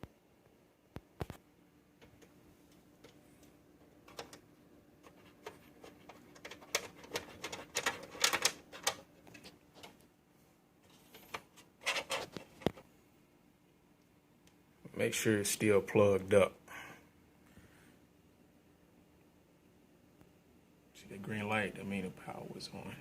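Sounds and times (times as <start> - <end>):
faint steady hum: 0.0 - 23.0
clicks and knocks handling computer: 2.0 - 10.0, 10.9 - 12.8.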